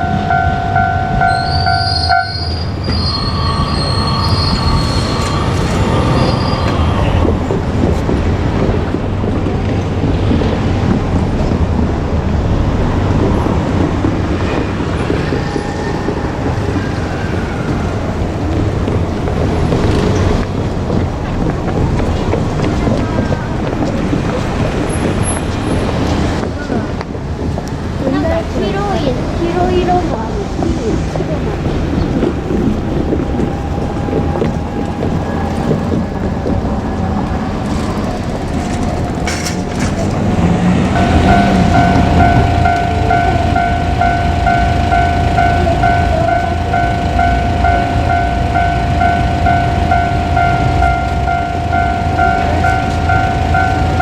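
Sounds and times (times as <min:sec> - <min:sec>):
steady high tone: 0:00.0 - 0:07.8, 0:40.6 - 0:54.0
diesel railcar rumble: 0:00.0 - 0:54.0.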